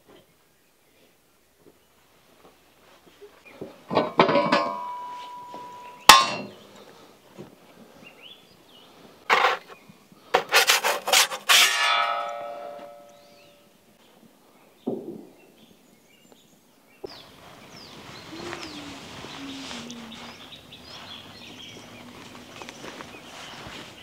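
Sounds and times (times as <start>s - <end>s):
metal cookware clanking: 3.9s - 6.6s, 11.5s - 13.3s.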